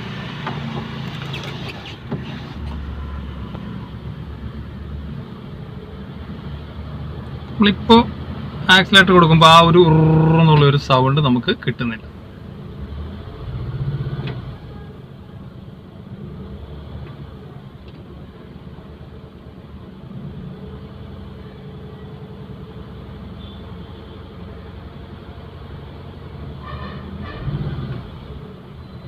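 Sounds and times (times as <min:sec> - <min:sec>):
car engine idling and revving: 0:00.0 - 0:08.7, 0:24.7 - 0:28.8.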